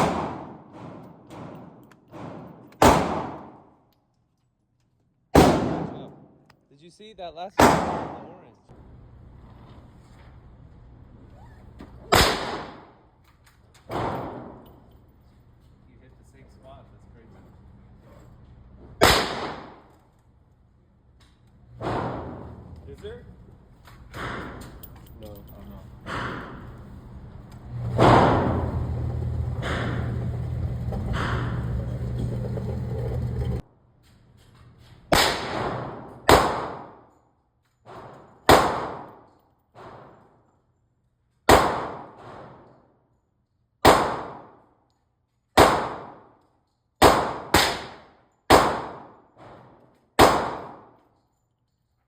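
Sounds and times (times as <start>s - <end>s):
sharp gunshots: 0.0s - 3.7s, 5.4s - 6.4s, 7.6s - 8.5s, 12.1s - 13.0s, 19.0s - 19.9s, 27.9s - 28.7s, 35.1s - 37.0s, 38.5s - 39.2s, 41.5s - 42.6s, 43.8s - 44.6s, 45.6s - 46.3s, 47.0s - 49.2s, 50.2s - 50.9s
noisy hum: 25.5s - 33.6s.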